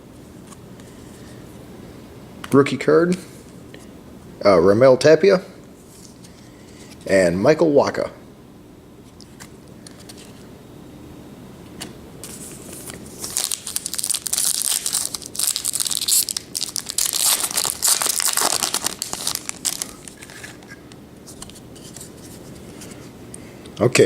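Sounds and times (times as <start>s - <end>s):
plastic wrapper ripping and rustling: 12.3s - 20.7s.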